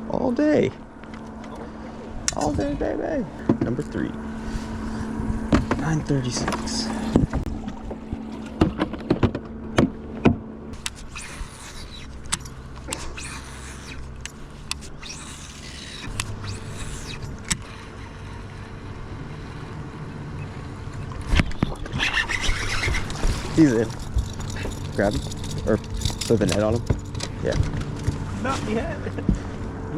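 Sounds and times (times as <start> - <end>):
low hum: 0.0 - 29.9
knocks and clatter in a boat: 3.4 - 3.9, 5.3 - 10.9, 20.8 - 29.6.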